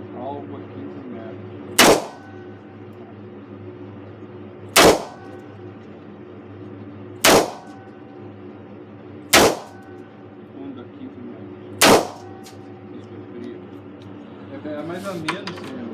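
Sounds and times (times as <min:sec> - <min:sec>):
revolver gunshots: 0:01.8 - 0:02.3, 0:04.8 - 0:05.3, 0:07.2 - 0:07.8, 0:09.4 - 0:09.8, 0:11.8 - 0:12.5.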